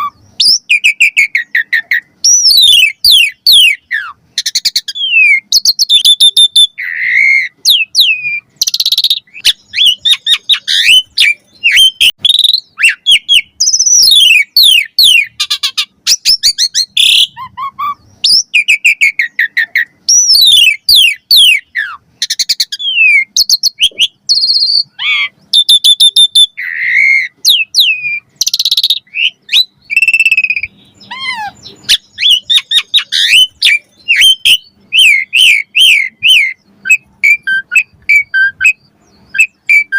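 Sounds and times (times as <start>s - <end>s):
starling singing: 0.0s - 39.9s.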